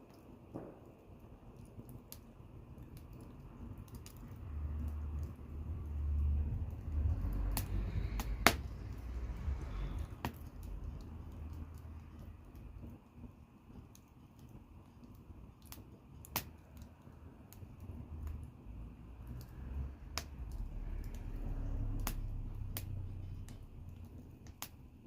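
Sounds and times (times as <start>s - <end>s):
sharp pops of fire: 0.0s - 25.0s
wood fire crackling: 0.0s - 25.0s
low rumble: 3.4s - 12.9s, 18.0s - 25.0s.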